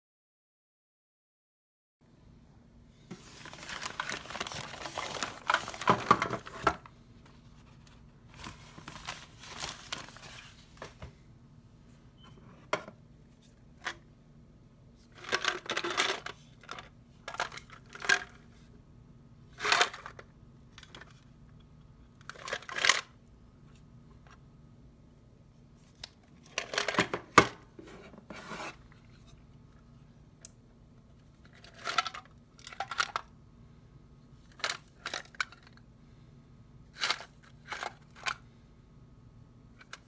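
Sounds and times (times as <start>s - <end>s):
packaging crinkling and rustling: 3.1s - 11.1s.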